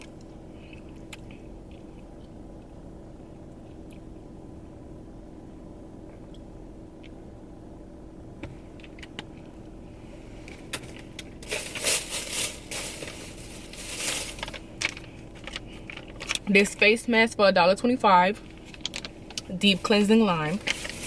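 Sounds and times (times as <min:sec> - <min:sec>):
steady low hum: 0:00.0 - 0:21.0
plastic bag crinkling: 0:11.4 - 0:16.6, 0:18.4 - 0:21.0.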